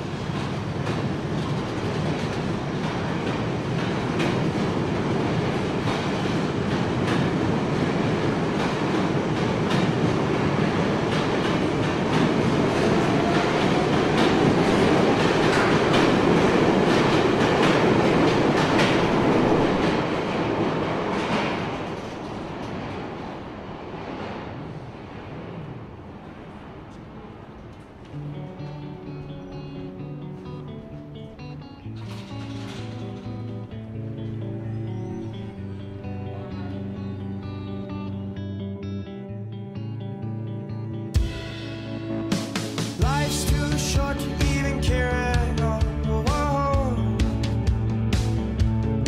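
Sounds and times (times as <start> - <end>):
rumbling rattling noise: 31.0 - 34.5.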